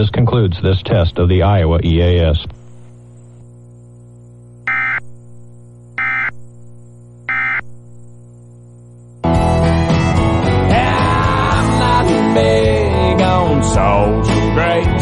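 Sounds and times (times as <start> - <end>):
buzzy digital tone bursts: 0.0 - 14.8
faint steady hum: 0.0 - 15.0
country song: 9.3 - 15.0.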